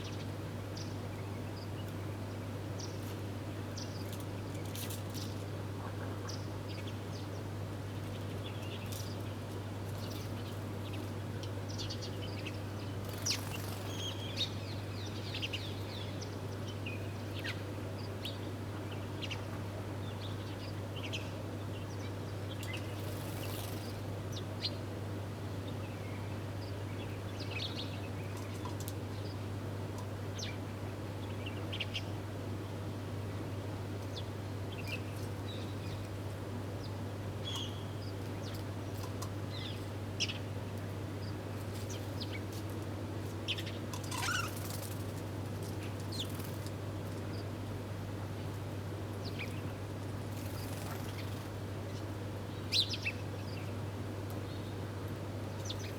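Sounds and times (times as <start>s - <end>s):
wings fluttering: 44.0s - 46.8s, 50.3s - 51.6s.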